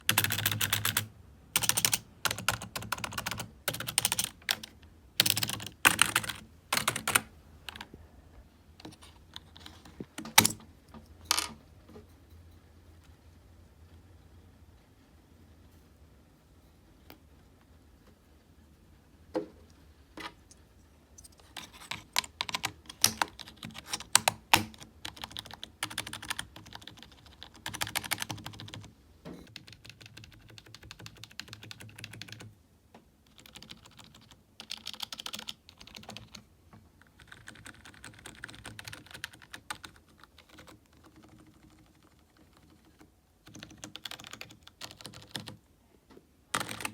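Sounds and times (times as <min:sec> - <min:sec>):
typing on keyboard: 0:00.0 - 0:07.9, 0:21.5 - 0:28.9, 0:29.5 - 0:32.5, 0:33.3 - 0:45.6, 0:46.5 - 0:46.9.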